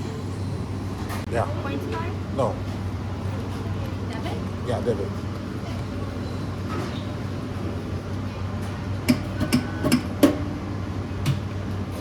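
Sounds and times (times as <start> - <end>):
payment terminal clicks: 9.0 - 10.4.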